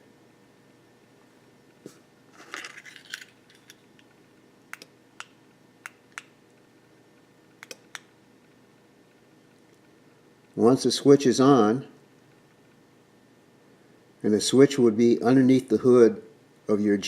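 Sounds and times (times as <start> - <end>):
small switch clicking: 4.7 - 6.3, 7.6 - 8.1.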